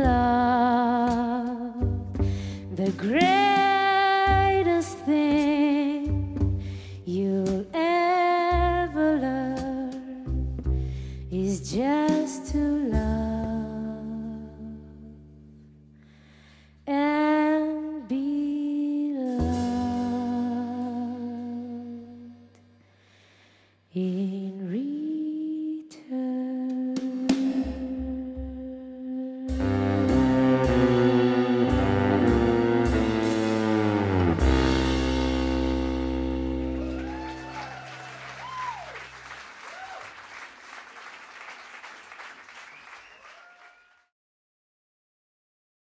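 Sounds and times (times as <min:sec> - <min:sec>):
cello sustained notes: 0:29.5 - 0:37.1
audience applauding and cheering: 0:36.3 - 0:44.1.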